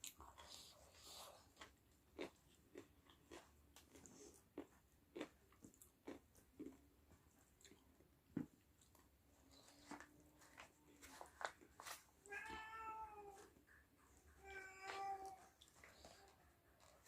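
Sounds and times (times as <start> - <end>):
chewing crunchy chicken: 0.0 - 8.1.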